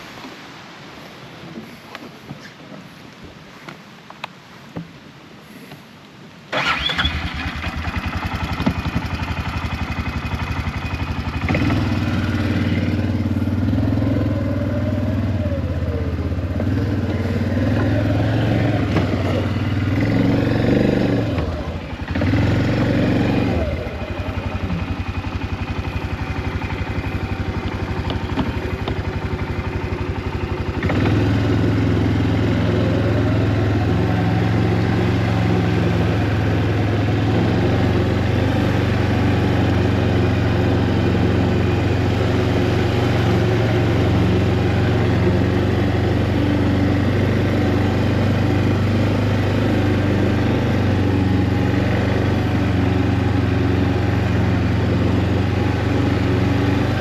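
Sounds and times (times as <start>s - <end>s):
small vehicle engine revving: 6.5s - 57.0s.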